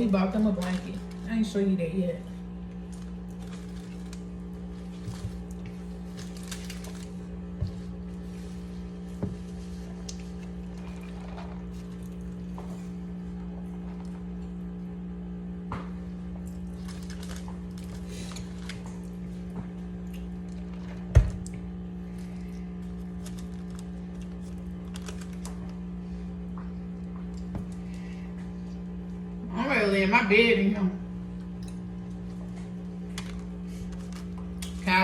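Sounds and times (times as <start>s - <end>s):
low electrical hum: 0.0s - 35.0s
clicks and rustles of handling: 22.8s - 25.8s.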